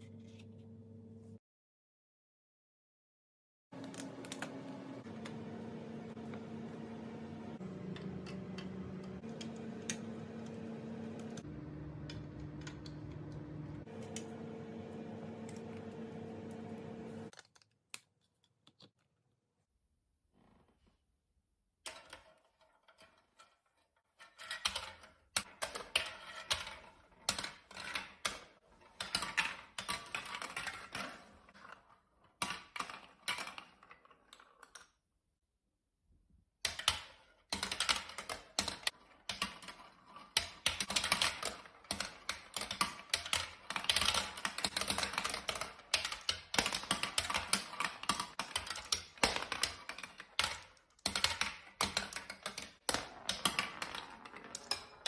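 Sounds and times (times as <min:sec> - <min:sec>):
marbles clattering on plastic: 0:37.6 - 0:55.0.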